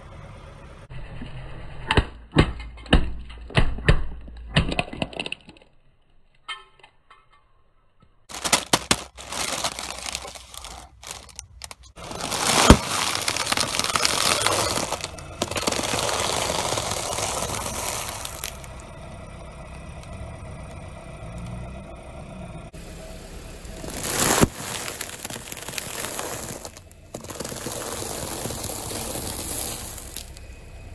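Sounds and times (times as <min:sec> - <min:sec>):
objects crunching under car tyre: 0:08.3 - 0:21.8, 0:23.5 - 0:30.9.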